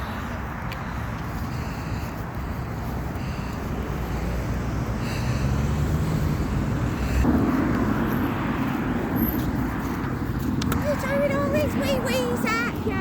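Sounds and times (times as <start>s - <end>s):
bus diesel engine pulling away: 3.6s - 7.3s.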